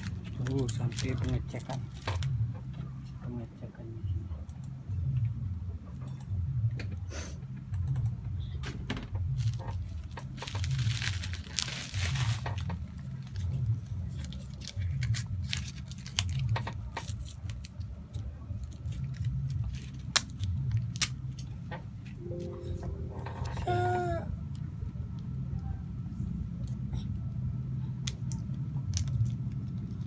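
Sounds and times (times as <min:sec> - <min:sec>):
packaging clicks and rustles: 0:00.0 - 0:02.3, 0:09.4 - 0:21.5
packaging tearing: 0:09.4 - 0:17.7
low pulsing hum: 0:22.2 - 0:27.7.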